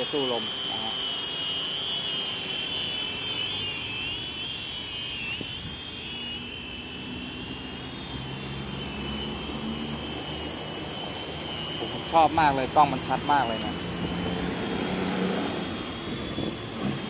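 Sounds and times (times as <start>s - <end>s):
drone propeller whine: 0.0s - 17.0s.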